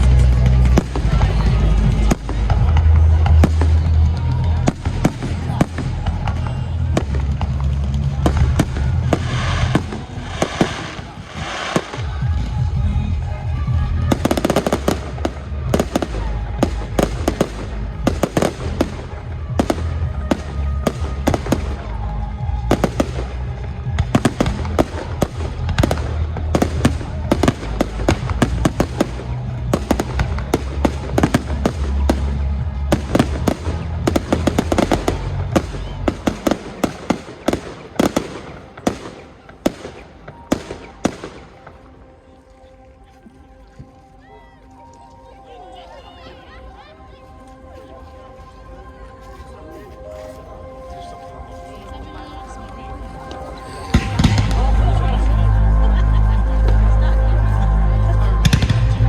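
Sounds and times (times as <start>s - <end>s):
deep rumble: 0.0s - 36.8s, 53.8s - 59.0s
fireworks bangs and crackles: 0.0s - 42.2s, 53.2s - 59.0s.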